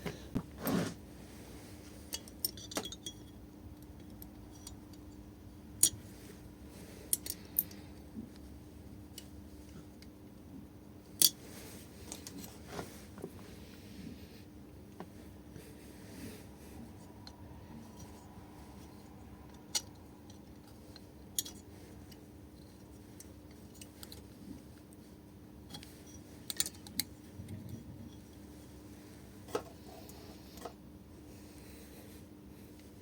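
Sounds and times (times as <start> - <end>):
steady faint hum: 0.0 - 33.0
metallic clicks of tools and parts: 2.1 - 5.2, 7.1 - 7.8, 19.5 - 24.3, 25.7 - 27.1.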